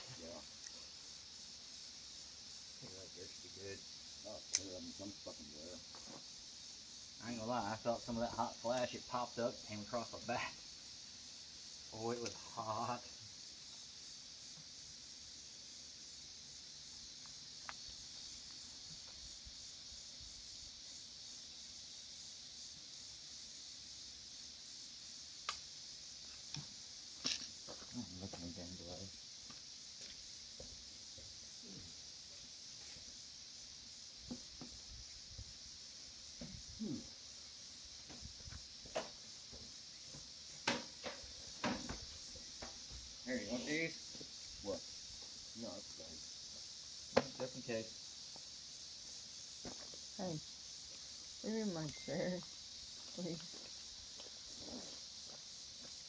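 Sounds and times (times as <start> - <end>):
blow torch flame hissing: 0.0 - 53.0
objects knocking and clunking: 40.6 - 42.8.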